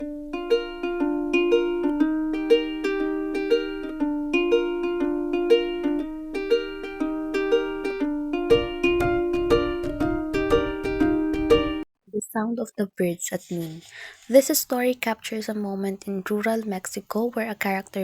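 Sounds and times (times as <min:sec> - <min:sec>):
plucked string melody: 0:00.0 - 0:11.8.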